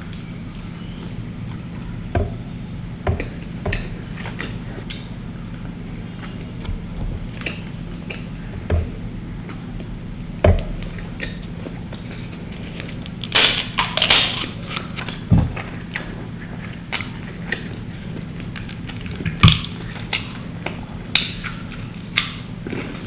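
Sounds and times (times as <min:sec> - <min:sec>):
steady low hum: 0:00.0 - 0:23.0
crunching crisp food: 0:10.9 - 0:23.0.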